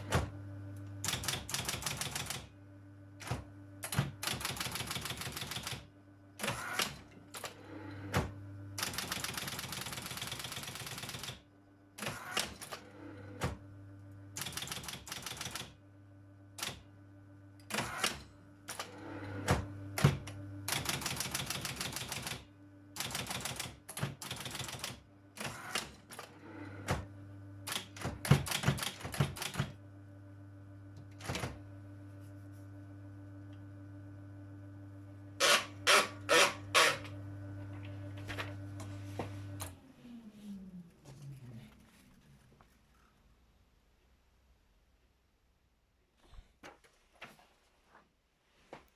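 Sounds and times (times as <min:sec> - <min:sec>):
typewriter typing: 0:01.0 - 0:02.5, 0:03.2 - 0:07.6, 0:08.8 - 0:11.4, 0:14.4 - 0:15.8, 0:16.6 - 0:16.8, 0:19.5 - 0:26.3, 0:27.7 - 0:29.8, 0:31.2 - 0:31.6, 0:35.4 - 0:37.1.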